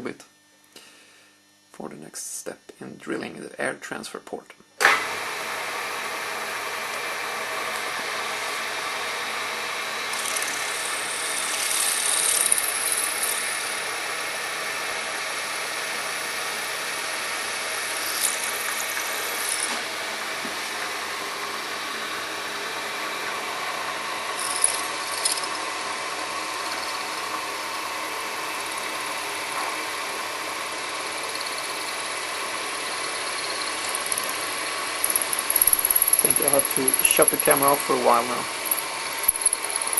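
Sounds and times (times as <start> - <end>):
milling machine spindle running: 5.1 - 39.9
drill bit squealing: 10.1 - 13.8, 17.4 - 19.8, 24.4 - 25.8, 26.4 - 27.2, 30.8 - 39.9.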